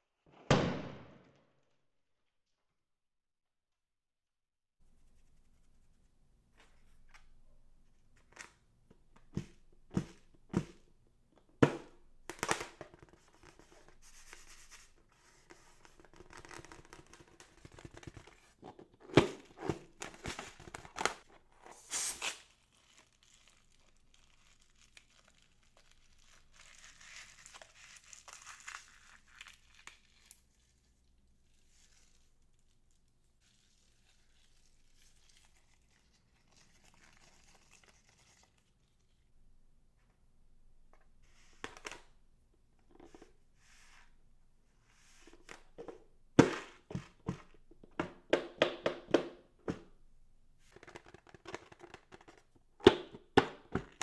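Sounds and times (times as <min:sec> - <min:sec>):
crinkling and tearing: 0:15.7 - 0:30.8.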